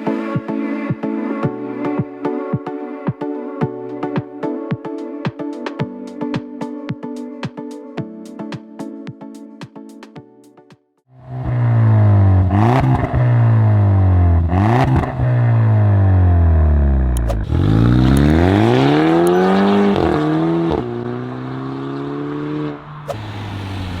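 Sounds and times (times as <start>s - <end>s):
car engine revving: 11.2s - 24.0s
engine crackles: 11.4s - 21.0s, 22.7s - 24.0s
gear changes: 16.8s - 21.0s.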